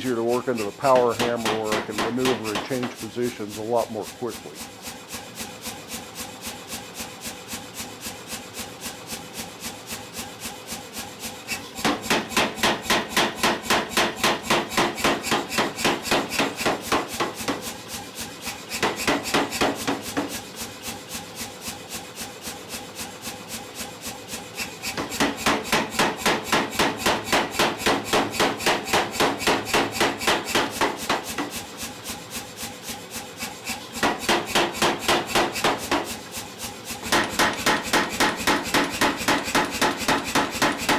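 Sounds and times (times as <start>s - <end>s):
power hammer striking metal: 0.0s - 4.7s, 11.6s - 20.5s, 24.6s - 31.8s, 33.6s - 40.9s.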